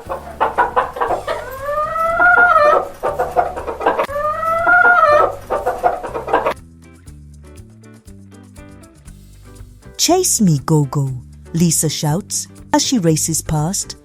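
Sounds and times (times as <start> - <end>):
chickens clucking: 0.0 - 6.6
rooster crowing: 0.0 - 6.6.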